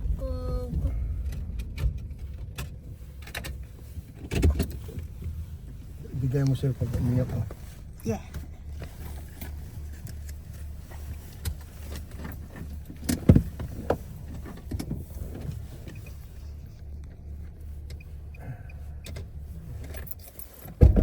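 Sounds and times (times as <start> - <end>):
low motor hum: 0.0 - 21.0
knocks and thumps: 11.4 - 15.7, 20.7 - 21.0.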